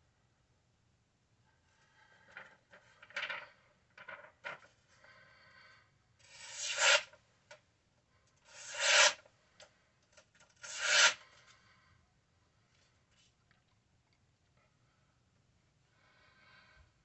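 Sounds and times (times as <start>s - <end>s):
knife blade scraping rough surface: 6.3s - 7.1s, 8.5s - 9.2s, 10.6s - 11.2s.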